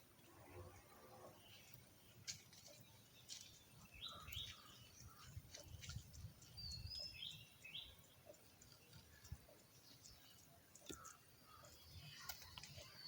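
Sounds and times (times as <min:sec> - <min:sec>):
small birds chirping: 0:00.0 - 0:13.0
faint ticks: 0:07.6 - 0:13.0.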